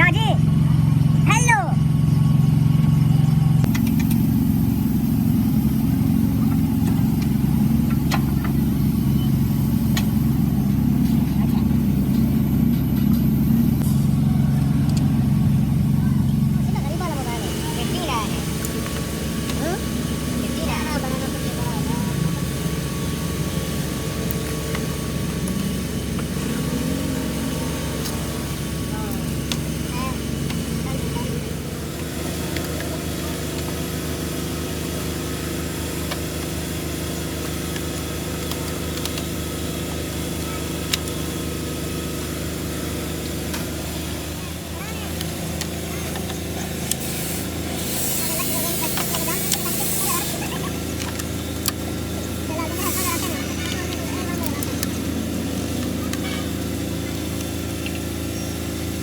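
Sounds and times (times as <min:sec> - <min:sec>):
low machine hum: 0:00.0 - 0:59.0
low mechanical rumble: 0:00.0 - 0:59.0
spray hissing: 0:03.8 - 0:12.6, 0:16.7 - 0:38.4, 0:44.8 - 0:59.0.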